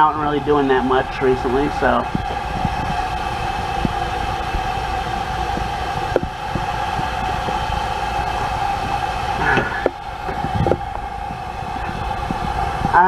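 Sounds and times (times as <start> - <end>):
droning hum: 0.0 - 13.0
low rumble: 0.0 - 13.0.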